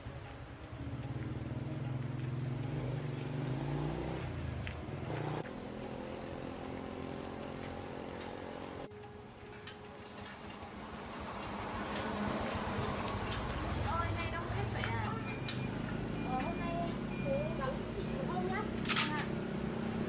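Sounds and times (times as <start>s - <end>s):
small motorbike engine revving: 2.4s - 8.9s.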